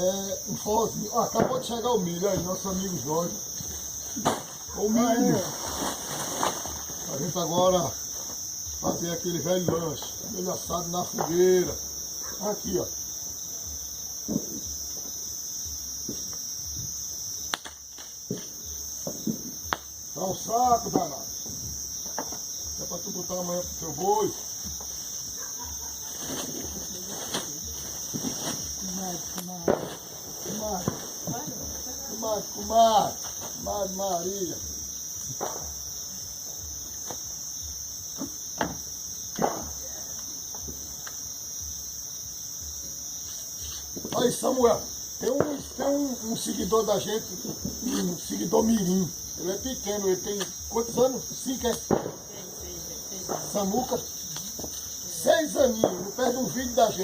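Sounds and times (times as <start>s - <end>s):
crickets trilling: 0.0s - 57.0s
sharp pops and clicks: 17.5s - 18.5s, 19.2s - 20.0s.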